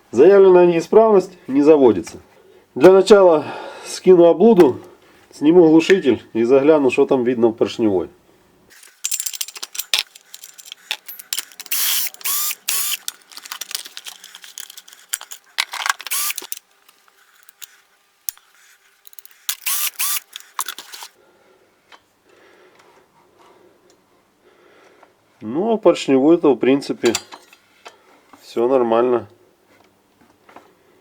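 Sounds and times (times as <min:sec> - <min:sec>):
metal parts clicking and rattling: 0:08.7 - 0:21.2.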